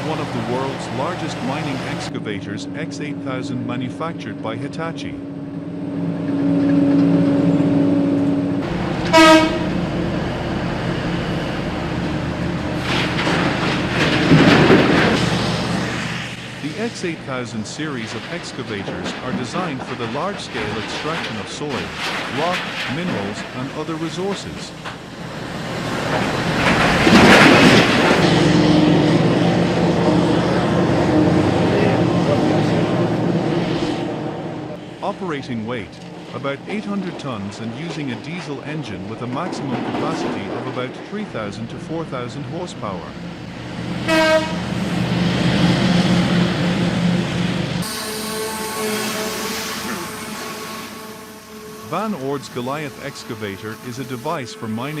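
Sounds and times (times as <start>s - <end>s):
horn blast: 0.0s - 5.5s, 6.2s - 10.0s, 44.0s - 44.8s, 47.8s - 55.0s
rumbling clattering noise: 0.0s - 43.8s
heavy machinery engine drone: 0.0s - 55.0s.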